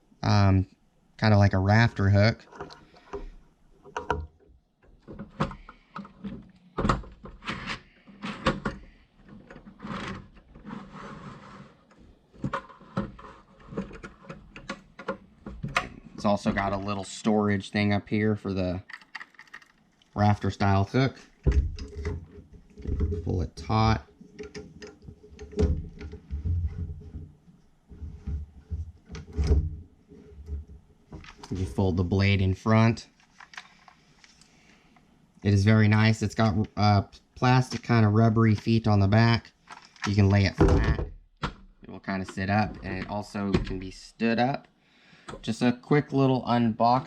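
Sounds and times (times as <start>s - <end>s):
plastic clicks and knocks: 2.5s - 10.6s, 12.3s - 16.0s, 18.8s - 20.2s.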